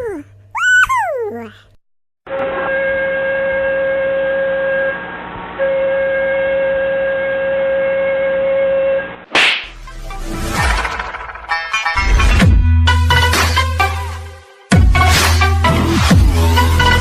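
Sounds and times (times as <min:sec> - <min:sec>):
horn blasts: 0:02.3 - 0:05.0, 0:05.6 - 0:09.1.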